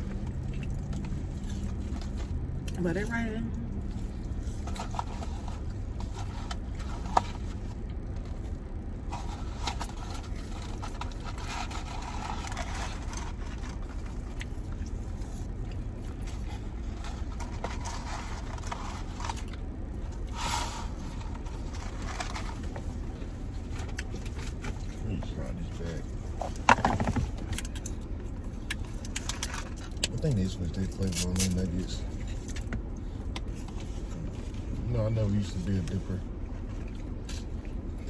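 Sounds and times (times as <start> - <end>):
chewing: 0.0 - 2.8, 9.4 - 20.3.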